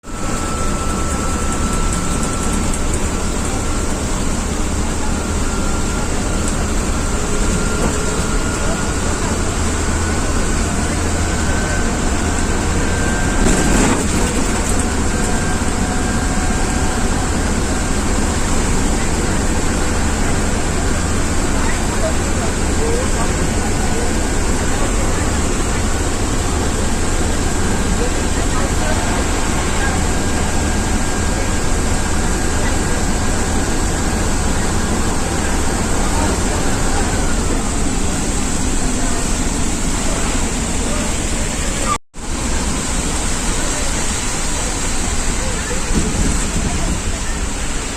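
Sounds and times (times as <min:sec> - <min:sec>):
bus diesel engine running: 0:00.0 - 0:47.9
heavy rain on wet road: 0:32.5 - 0:47.9
rain hissing on wet road: 0:41.7 - 0:47.9.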